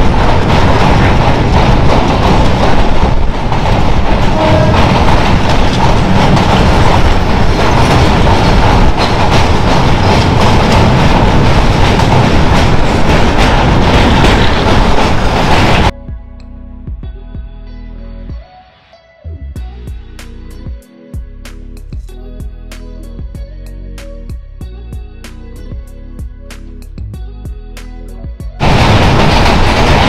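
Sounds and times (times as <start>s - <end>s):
wheels clattering over rails: 0.0s - 15.9s, 28.6s - 30.0s
train rumbling at speed: 0.0s - 16.0s, 27.0s - 30.0s.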